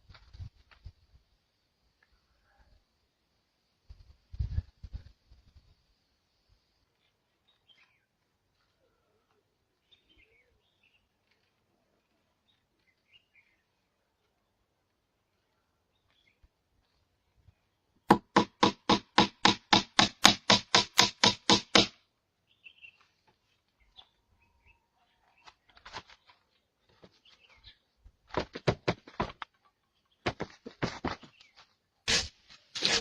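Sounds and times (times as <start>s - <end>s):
hammering on wood: 18.1s - 22.0s.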